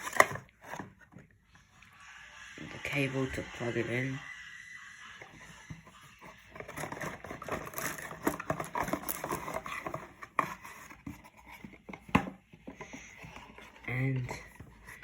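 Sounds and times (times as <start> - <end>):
packaging crinkling: 6.5 - 11.6.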